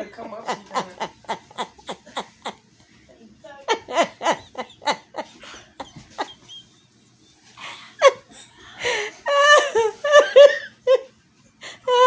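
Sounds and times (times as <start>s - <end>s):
person laughing: 0.3s - 2.6s, 3.7s - 6.7s, 7.6s - 11.1s.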